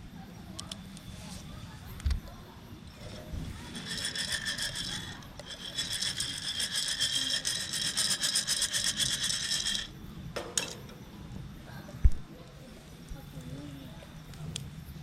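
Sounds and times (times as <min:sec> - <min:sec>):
coffee beans rattling in roaster: 0:02.8 - 0:11.1.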